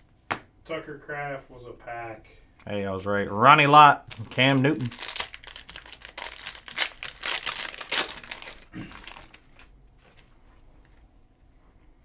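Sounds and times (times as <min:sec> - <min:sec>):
foil wrapper crinkling: 0:04.0 - 0:10.6.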